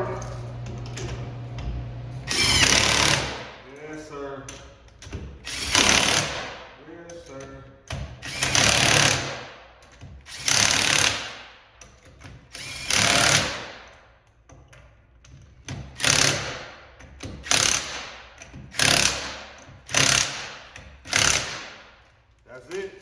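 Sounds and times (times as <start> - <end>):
impact wrench bursts: 2.3 - 3.9, 5.1 - 6.8, 7.9 - 14.0, 15.7 - 22.1.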